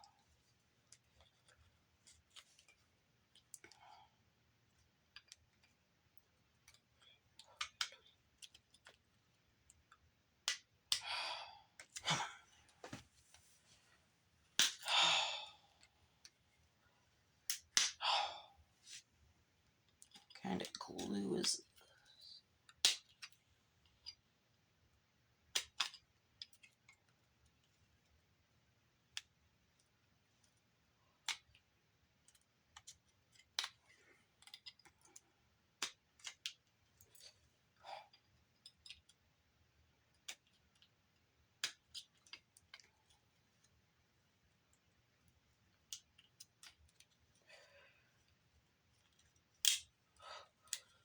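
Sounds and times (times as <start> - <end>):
sharp clicks of small parts: 25.5 - 26.8, 49.0 - 49.9.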